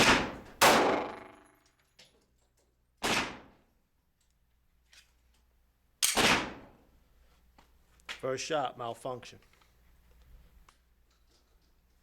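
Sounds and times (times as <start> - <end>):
pistol gunshots with echo: 0.0 - 1.6, 3.0 - 3.6, 6.0 - 6.7.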